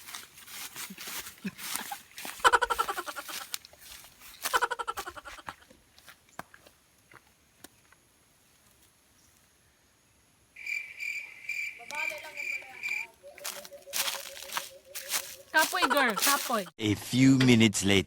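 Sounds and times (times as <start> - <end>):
cricket trill: 10.0 - 16.6.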